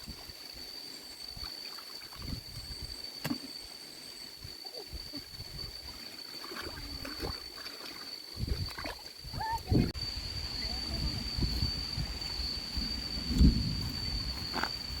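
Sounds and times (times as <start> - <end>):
water sloshing and splashing: 6.2 - 9.2.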